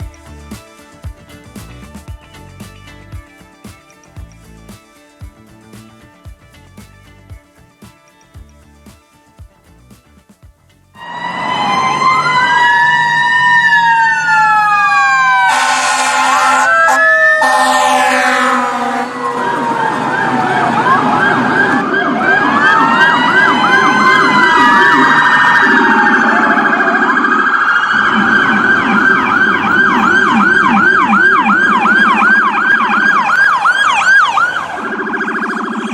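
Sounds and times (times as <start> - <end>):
emergency vehicle siren: 11.0 - 35.9.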